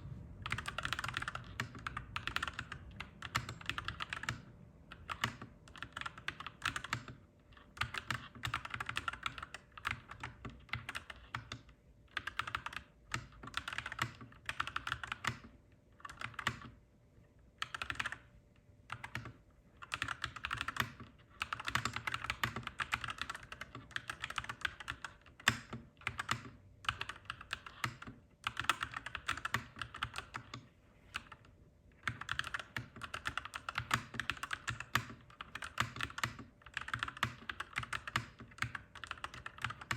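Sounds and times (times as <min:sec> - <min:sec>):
faint steady hum: 0:00.0 - 0:39.9
mechanical keyboard typing: 0:00.4 - 0:16.8, 0:17.6 - 0:18.3, 0:18.9 - 0:39.9.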